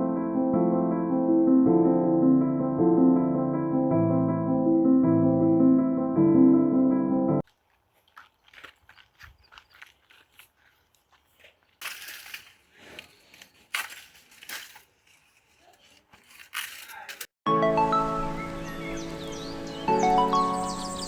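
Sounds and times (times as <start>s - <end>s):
music: 0.0s - 7.4s, 17.5s - 21.0s.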